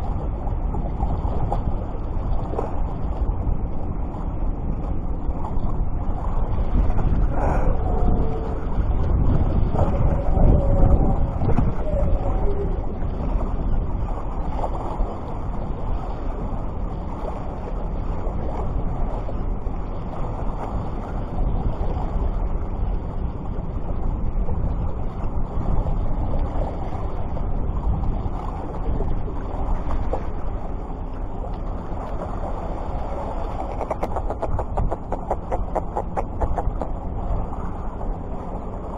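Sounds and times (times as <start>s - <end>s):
wind across microphone: 0.0s - 38.9s
surf washing on beach: 12.7s - 38.9s.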